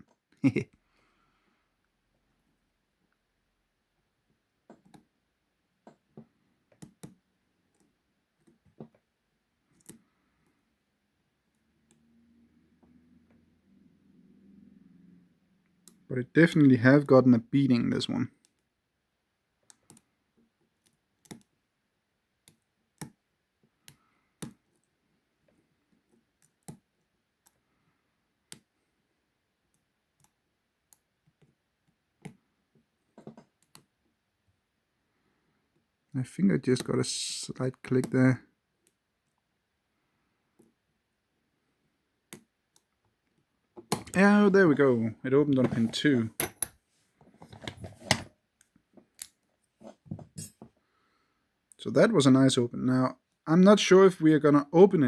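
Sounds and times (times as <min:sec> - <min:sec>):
lock-picking tools clicking: 0:46.4 - 0:46.8.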